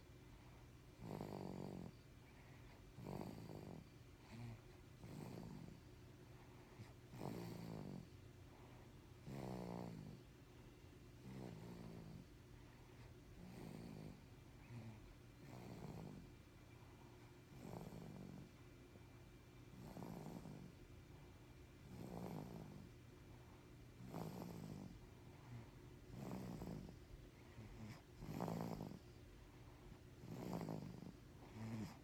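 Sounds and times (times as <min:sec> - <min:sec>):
rhythmic snoring: 0:00.0 - 0:10.3, 0:11.2 - 0:18.6, 0:19.7 - 0:20.8, 0:21.8 - 0:23.0, 0:23.9 - 0:32.0.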